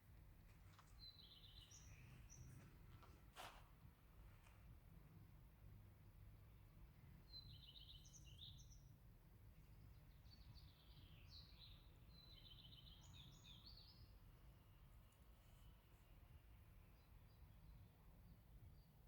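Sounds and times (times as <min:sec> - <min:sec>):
faint songbird chirps and trills: 0:00.8 - 0:02.8, 0:07.0 - 0:09.0, 0:09.6 - 0:19.0.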